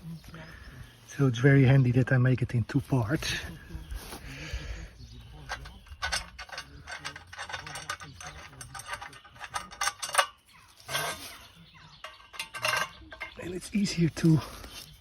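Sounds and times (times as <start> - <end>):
wooden parts clicking and knocking: 5.3 - 11.2, 12.0 - 13.6.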